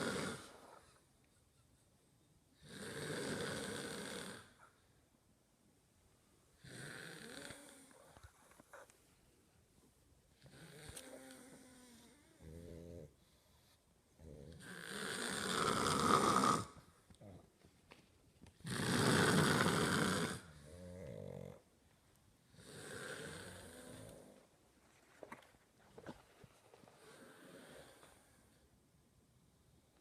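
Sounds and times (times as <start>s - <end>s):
buzzing snores: 0.0s - 0.6s, 2.6s - 4.6s, 6.6s - 8.2s, 10.4s - 13.1s, 14.2s - 16.8s, 18.6s - 21.6s, 22.5s - 24.4s
loud snoring: 0.0s - 0.6s, 2.6s - 4.6s, 6.6s - 8.2s, 10.4s - 13.1s, 14.2s - 16.9s, 18.6s - 21.6s, 22.5s - 24.4s.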